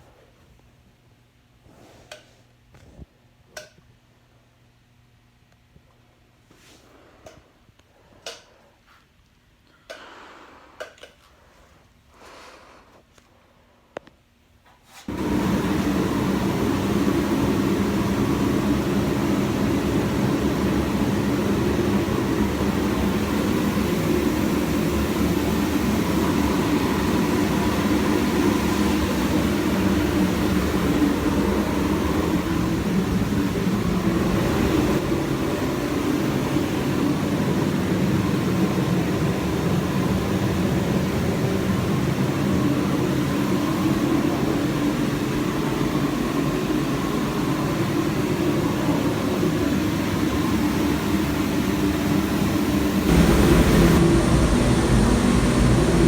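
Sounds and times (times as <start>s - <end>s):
low steady machine noise: 0.0s - 56.0s.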